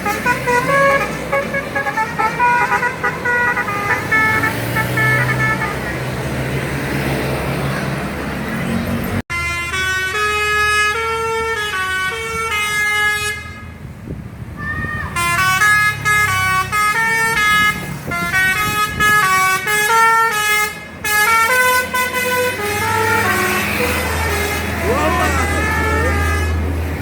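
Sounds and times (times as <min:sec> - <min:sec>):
bus musical air horn tune: 0:00.0 - 0:05.8, 0:09.3 - 0:13.8, 0:15.2 - 0:27.0
low engine and road rumble: 0:00.0 - 0:27.0.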